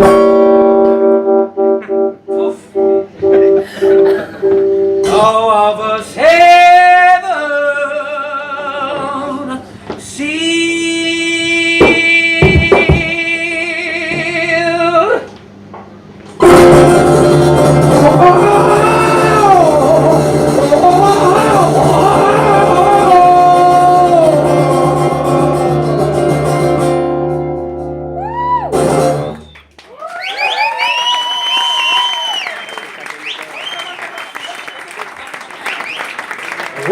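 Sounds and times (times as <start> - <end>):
live band playing: 0.0 - 5.2, 16.4 - 29.5
person singing with vibrato: 2.3 - 15.3, 16.5 - 26.9.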